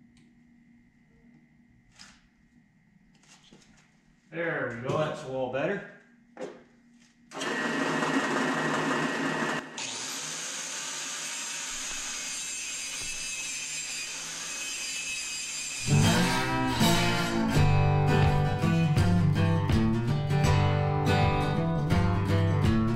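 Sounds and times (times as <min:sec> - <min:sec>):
drill press running: 0:07.3 - 0:15.9
angle grinder cutting bolt: 0:07.3 - 0:16.5
acoustic guitar music: 0:15.9 - 0:22.9.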